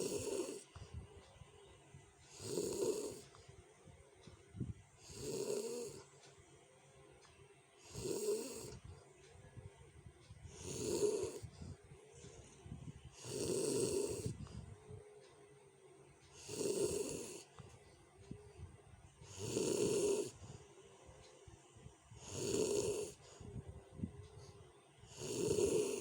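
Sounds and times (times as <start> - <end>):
person snoring harshly: 0.0 - 0.6, 2.3 - 3.2, 5.0 - 6.0, 7.9 - 8.8, 10.5 - 11.5, 13.2 - 14.4, 16.4 - 17.4, 19.3 - 20.4, 22.2 - 23.2, 25.1 - 26.0.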